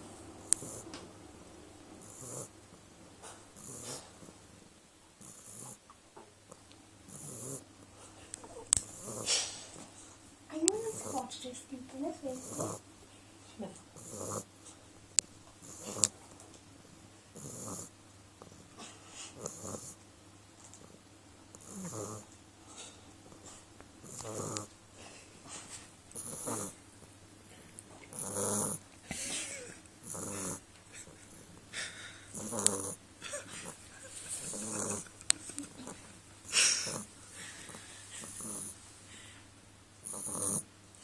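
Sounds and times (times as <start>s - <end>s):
dog snoring: 0.5s - 1.0s, 2.0s - 2.6s, 3.2s - 4.5s, 5.2s - 5.8s, 7.1s - 7.7s, 8.8s - 9.9s, 10.5s - 11.4s, 12.1s - 12.8s, 13.9s - 14.8s, 15.6s - 16.2s, 17.3s - 20.0s, 20.8s - 24.7s, 26.1s - 26.8s, 28.1s - 28.8s, 30.0s - 31.4s, 32.3s - 33.0s, 34.5s - 35.1s, 35.8s - 38.8s, 40.0s - 40.7s.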